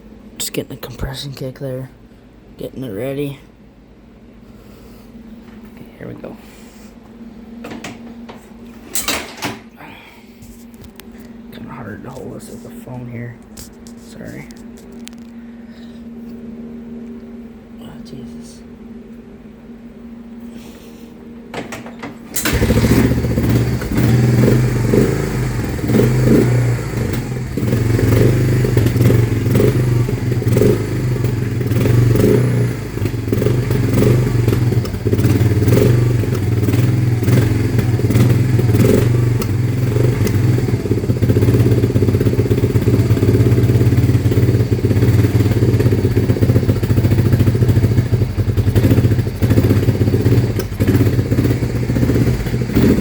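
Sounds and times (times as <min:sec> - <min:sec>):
engine clattering knock: 0:21.5 - 0:53.0
atv engine running: 0:21.6 - 0:53.0.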